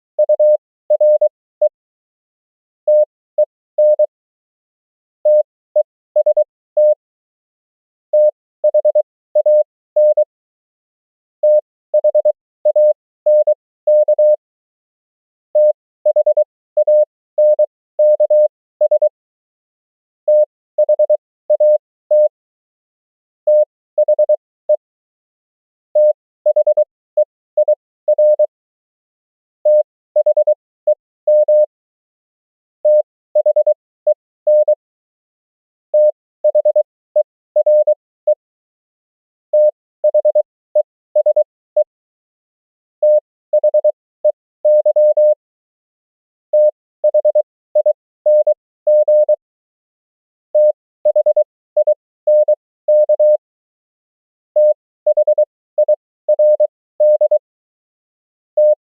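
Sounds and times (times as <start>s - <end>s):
morse code tone: 32.8s - 33.8s, 43.0s - 45.4s, 50.6s - 53.4s, 54.6s - 57.4s, 58.6s - 58.8s.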